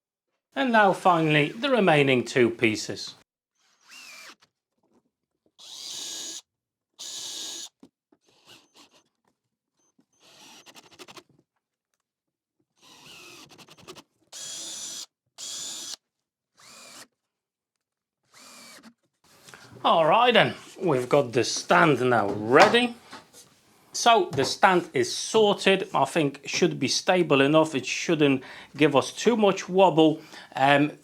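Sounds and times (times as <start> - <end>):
power drill driving screws into wood: 3.8 - 4.4, 5.6 - 6.4, 7.0 - 7.7, 12.8 - 16.0, 16.6 - 17.1, 18.3 - 19.0.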